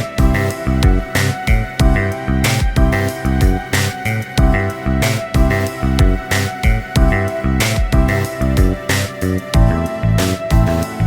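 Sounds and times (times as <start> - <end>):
background music with steady beat: 0.0 - 11.0
kick drum: 0.2 - 3.6, 4.4 - 4.6, 5.4 - 8.8, 9.6 - 9.9, 10.5 - 10.8.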